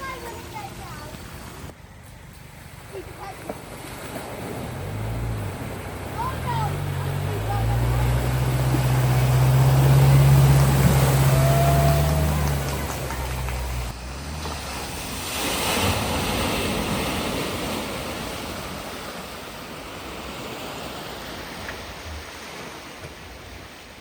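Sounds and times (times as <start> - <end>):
vehicle engine hum: 0.0 - 17.0
water splashing: 2.8 - 24.0.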